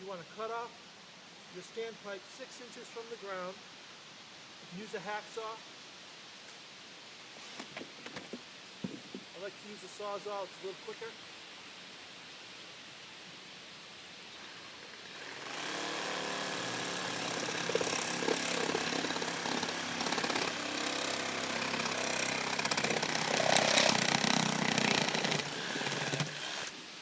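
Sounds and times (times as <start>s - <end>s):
reciprocating saw cutting pipe: 15.0s - 26.7s.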